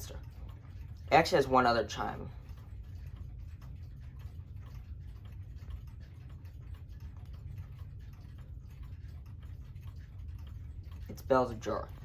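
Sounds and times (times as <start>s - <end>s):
low background rumble: 0.0s - 12.0s
pendulum clock ticking: 0.0s - 12.0s.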